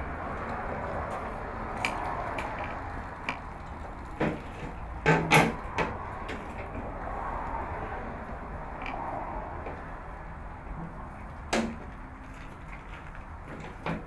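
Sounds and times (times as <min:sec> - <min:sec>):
hard objects clanking and knocking: 0:04.1 - 0:06.5.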